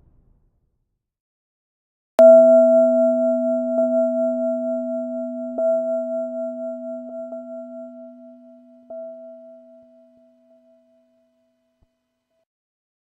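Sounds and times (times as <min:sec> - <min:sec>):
echoed bell strike: 0:02.2 - 0:11.4.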